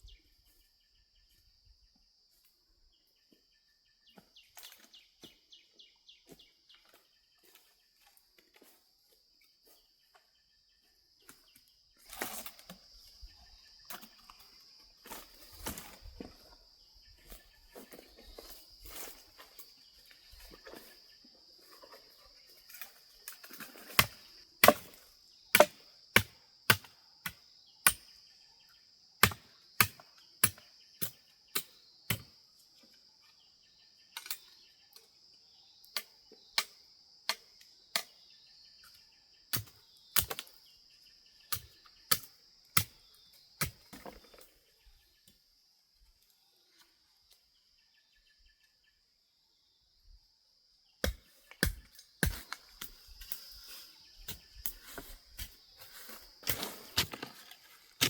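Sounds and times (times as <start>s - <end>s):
sharp chopping strikes: 24.0s - 25.0s, 25.6s - 26.9s.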